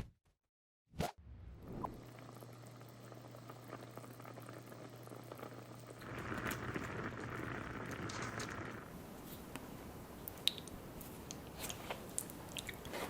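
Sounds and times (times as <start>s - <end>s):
steady low hum: 1.3s - 11.1s
pot bubbling and popping: 1.6s - 13.0s.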